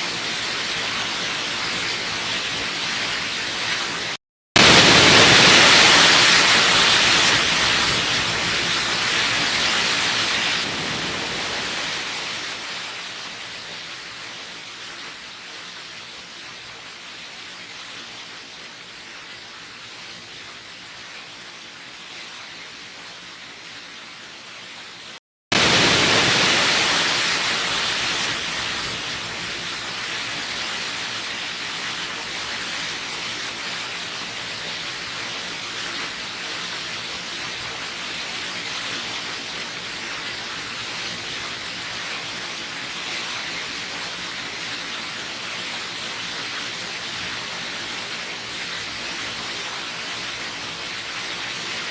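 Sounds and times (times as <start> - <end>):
waterfall rushing: 0.0 - 15.3, 25.5 - 36.4.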